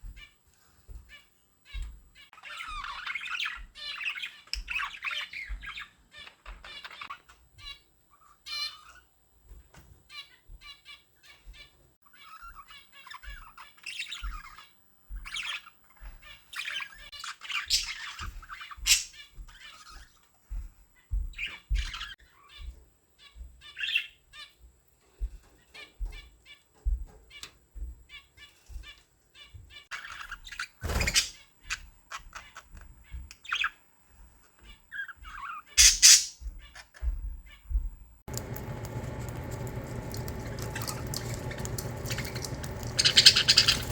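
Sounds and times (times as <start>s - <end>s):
budgerigars chattering: 35.3s - 36.4s, 38.3s - 43.9s
harsh bird bursts: 35.8s - 36.3s, 38.4s - 43.9s.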